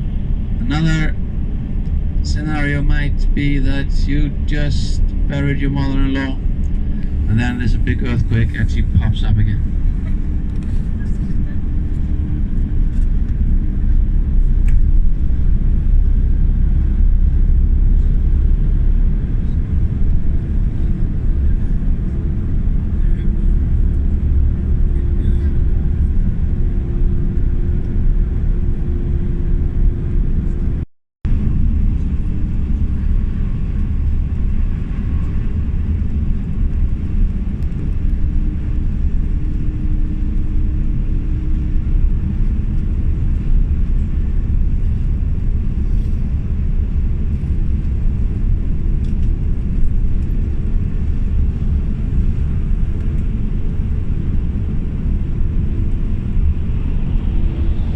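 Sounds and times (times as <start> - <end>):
bus engine and road rumble: 0.0 - 57.9.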